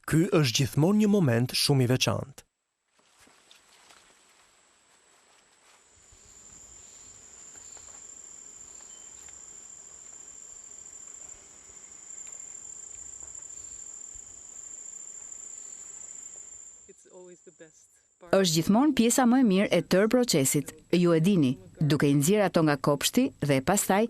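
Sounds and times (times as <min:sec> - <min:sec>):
insects shrilling: 0:06.0 - 0:17.8.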